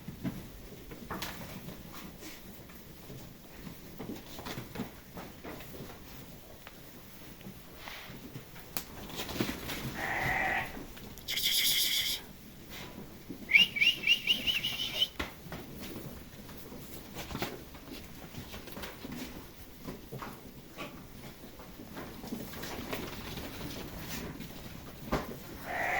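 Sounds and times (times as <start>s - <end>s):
lambs bleating: 9.9s - 10.9s, 25.6s - 25.9s.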